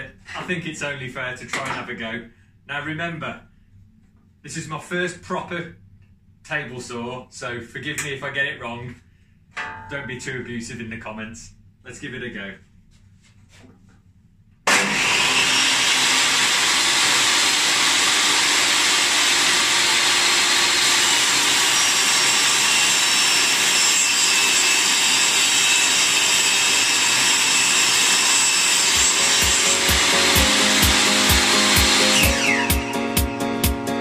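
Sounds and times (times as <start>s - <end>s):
table saw cutting wood: 14.7s - 34.0s
music with a steady beat: 29.0s - 34.0s.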